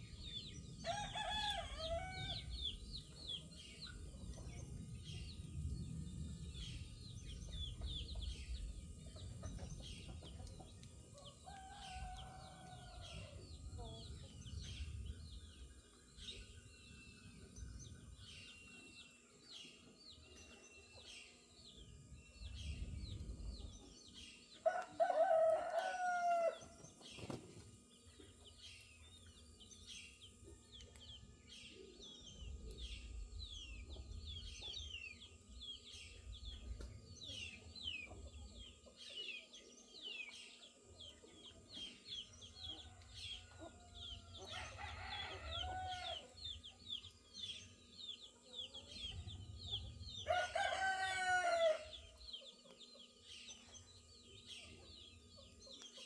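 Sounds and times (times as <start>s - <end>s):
small birds chirping: 0.0s - 56.0s
rooster crowing: 0.8s - 2.5s, 24.7s - 26.6s, 42.9s - 46.4s, 50.2s - 52.0s.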